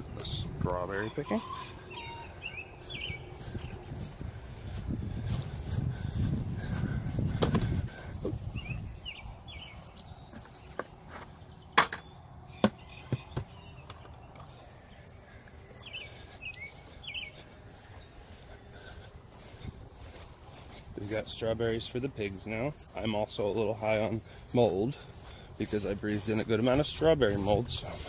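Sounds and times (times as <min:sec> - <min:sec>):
low rumble of wind: 0:00.0 - 0:28.0.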